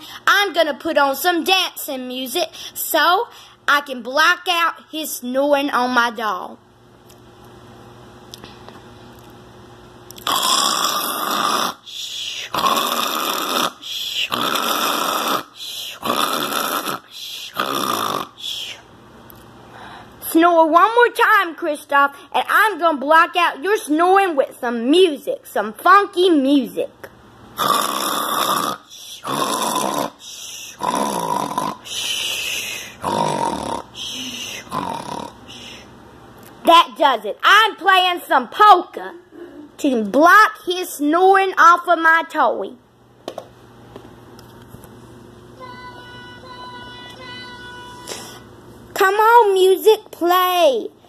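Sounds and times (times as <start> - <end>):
person snoring loudly: 10.2 - 18.5, 27.6 - 35.9.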